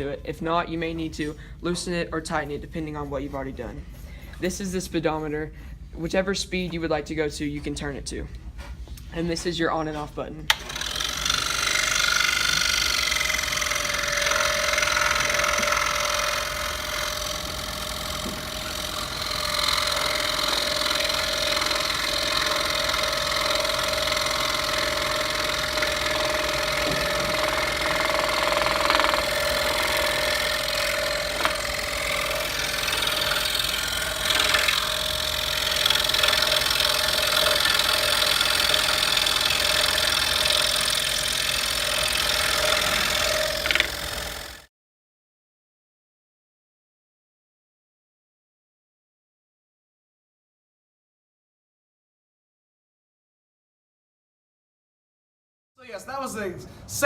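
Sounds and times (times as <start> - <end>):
saw blade rasping through wood: 10.5 - 44.7
scroll saw motor hum: 10.5 - 44.7.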